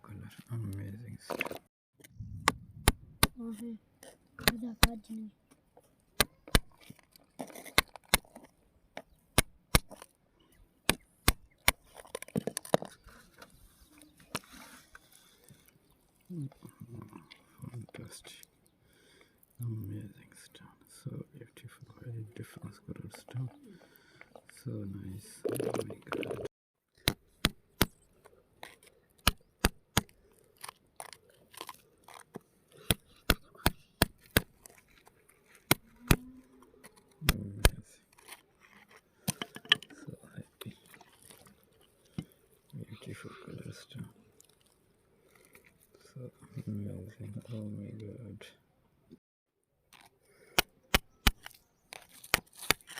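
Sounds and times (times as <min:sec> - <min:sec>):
sharp hard knocks: 0:02.4 - 0:03.4
hard objects knocking: 0:39.3 - 0:40.0.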